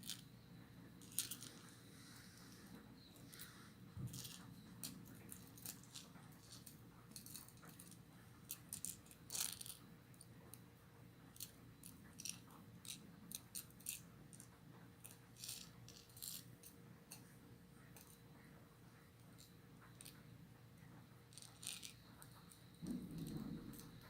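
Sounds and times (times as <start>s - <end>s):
faint steady hum: 0.0s - 24.0s
small hard objects clicking: 1.0s - 1.6s, 3.3s - 9.8s, 11.4s - 16.5s, 21.3s - 24.0s.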